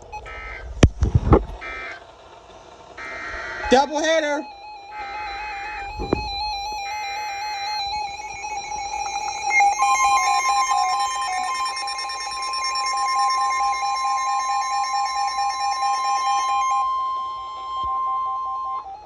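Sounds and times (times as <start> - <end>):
warbling electronic alarm: 0.0 - 0.7, 3.0 - 19.0
steady warning alert tone: 3.6 - 17.0.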